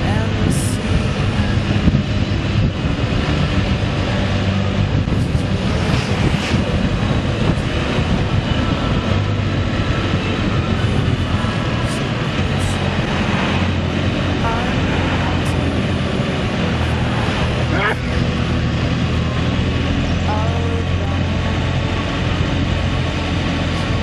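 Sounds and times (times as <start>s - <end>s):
vehicle engine hum: 0.0s - 24.0s
wind and road noise: 0.0s - 24.0s.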